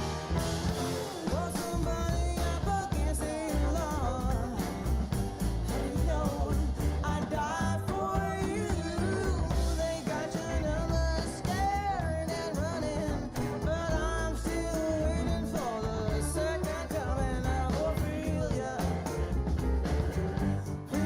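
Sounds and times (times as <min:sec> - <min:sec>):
rock song with singing: 0:00.0 - 0:21.0.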